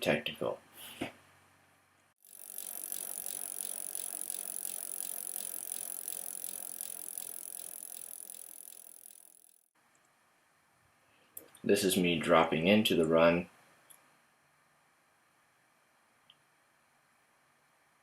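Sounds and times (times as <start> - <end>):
bike rolling and rattling on dirt: 2.3 - 9.7.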